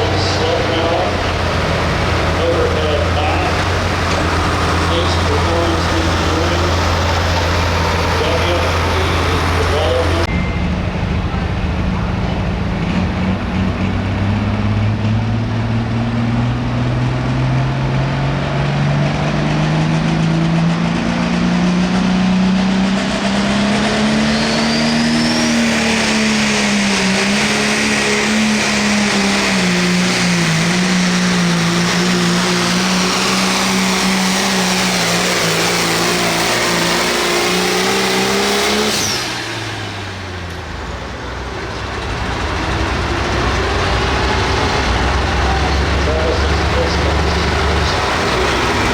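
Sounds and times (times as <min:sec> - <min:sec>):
tractor diesel engine at full power: 0:00.0 - 0:48.9.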